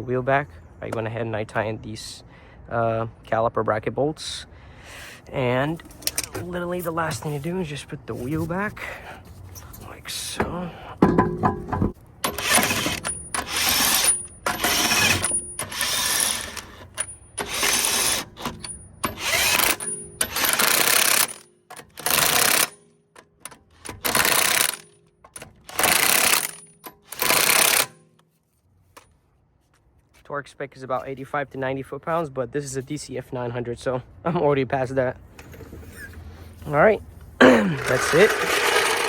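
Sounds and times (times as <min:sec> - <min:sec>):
impact wrench hammering: 0:11.0 - 0:28.0.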